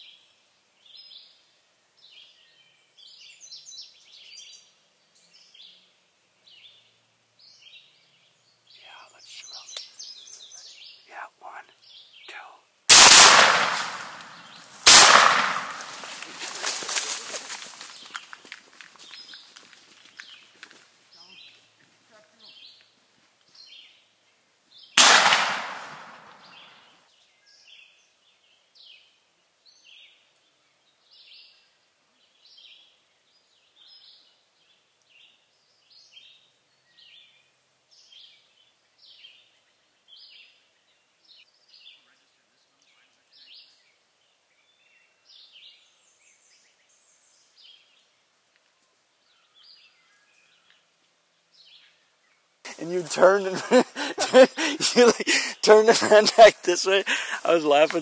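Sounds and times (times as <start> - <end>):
songbird singing: 0.0 - 58.0
shotgun blast echoing: 12.9 - 16.2, 25.0 - 26.7.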